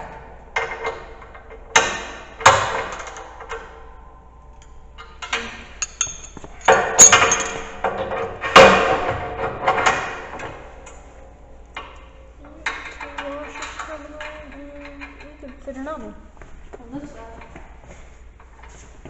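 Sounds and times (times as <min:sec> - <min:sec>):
metal strikes and clanks: 0:00.0 - 0:12.0.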